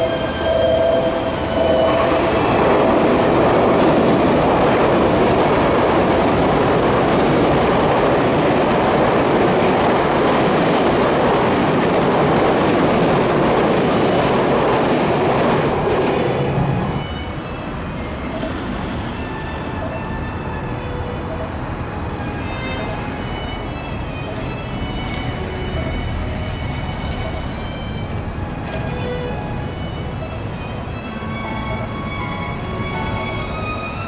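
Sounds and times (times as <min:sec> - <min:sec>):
train wheels rumbling on rail: 0:00.0 - 0:34.0
clicking over rail joints: 0:03.4 - 0:16.0.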